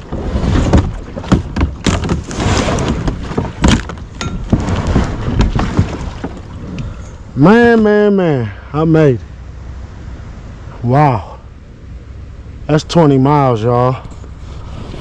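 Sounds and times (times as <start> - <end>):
kayak and gear knocking: 0.0 - 6.9
wind rumble on microphone: 14.0 - 15.0.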